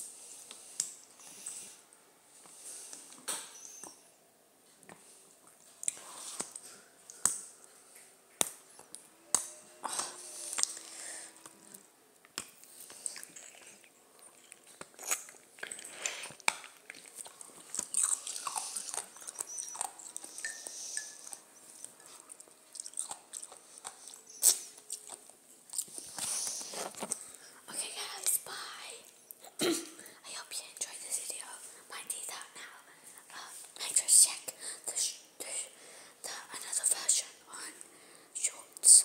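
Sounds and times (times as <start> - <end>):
grinding crunches of chewing: 12.7 - 27.4.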